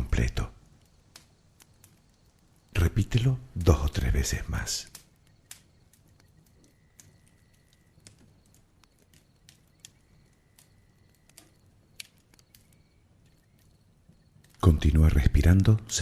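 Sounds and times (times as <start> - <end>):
soft clicks: 4.9 - 13.7.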